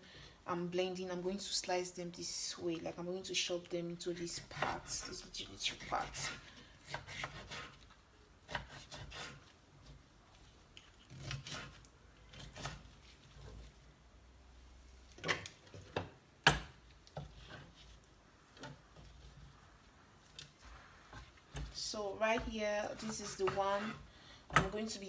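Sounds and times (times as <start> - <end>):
soft rubbing: 17.2 - 24.1.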